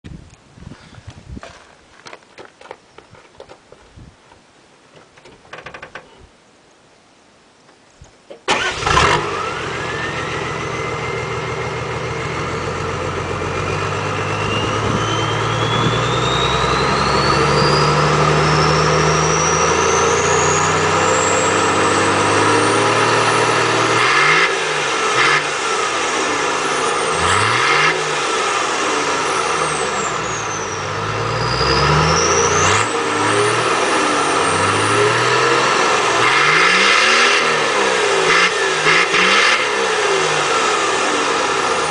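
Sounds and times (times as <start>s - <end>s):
vehicle engine idling and revving: 8.5s - 41.9s
high whine rising in pitch: 9.4s - 41.9s.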